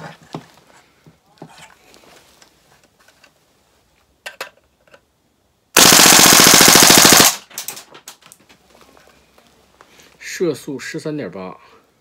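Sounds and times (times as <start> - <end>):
airsoft gun full-auto burst: 5.8 - 7.5.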